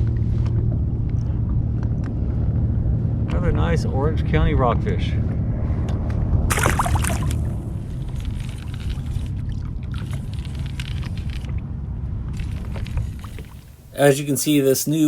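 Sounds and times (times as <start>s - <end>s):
wind rumble on microphone: 0.0s - 14.0s
water splashing: 6.5s - 7.8s.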